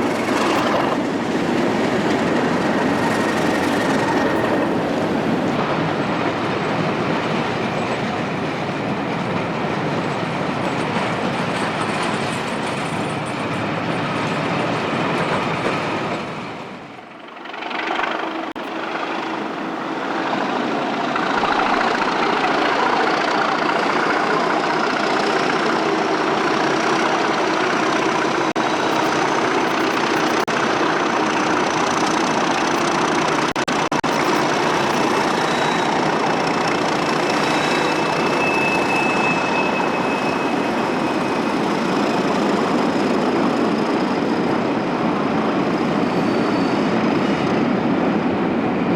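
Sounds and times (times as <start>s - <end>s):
diesel train running on rails: 0.0s - 48.9s.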